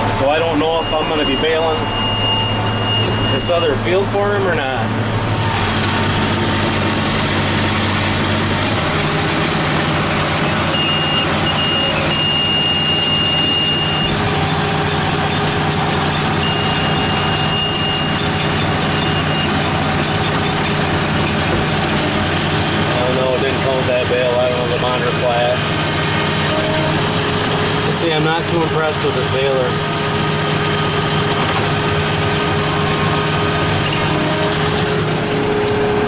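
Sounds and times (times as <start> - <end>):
tractor diesel engine running: 0.0 - 36.0
high electronic beep: 0.5 - 3.7, 10.7 - 14.1, 16.4 - 18.3.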